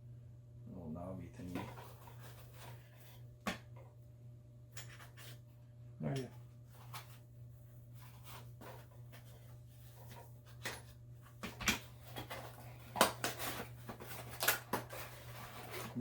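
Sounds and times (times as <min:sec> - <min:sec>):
low electrical hum: 0:00.0 - 0:16.0
packaging rustling: 0:12.0 - 0:16.0.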